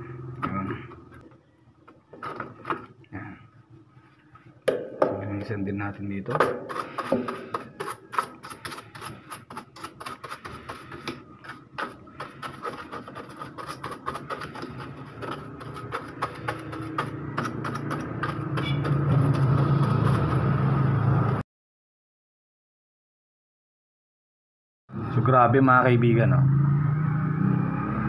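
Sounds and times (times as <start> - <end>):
paintbrush scrubbing: 6.5 - 20.5.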